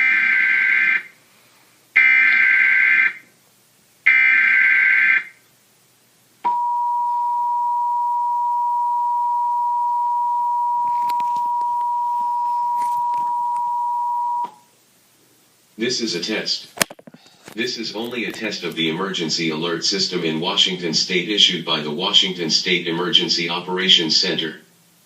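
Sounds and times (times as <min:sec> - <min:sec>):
two-tone attention signal: 0:06.5 - 0:14.6.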